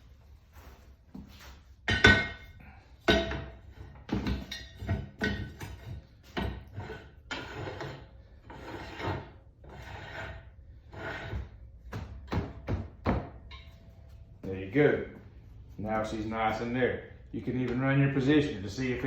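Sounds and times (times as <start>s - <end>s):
sharp knocks on metal pipe: 3.1s - 3.5s
pipe scraping and rubbing: 3.2s - 12.4s.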